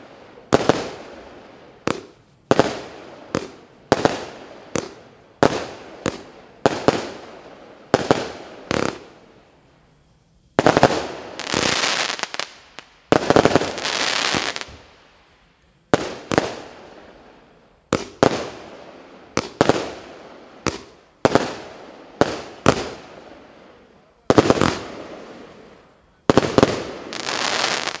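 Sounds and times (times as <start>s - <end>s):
firework crackling: 0.0s - 28.0s
firework reports: 15.9s - 28.0s.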